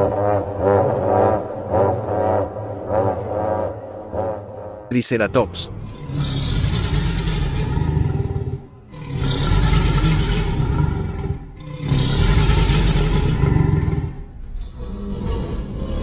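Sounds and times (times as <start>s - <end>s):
deep rough dinosaur calls: 5.2s - 16.0s.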